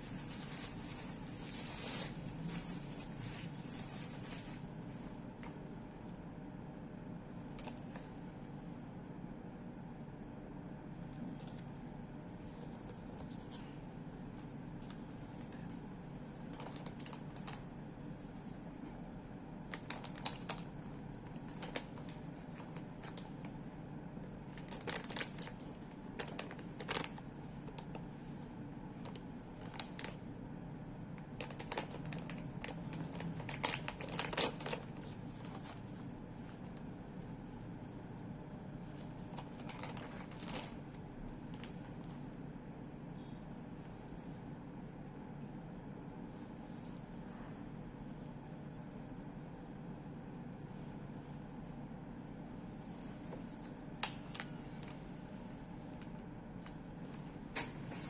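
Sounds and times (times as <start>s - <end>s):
steady low hum: 0.0s - 58.0s
packaging crinkling and clicking: 16.5s - 17.6s, 19.7s - 23.3s, 24.5s - 28.0s, 29.0s - 30.2s, 31.3s - 35.9s, 38.9s - 41.8s.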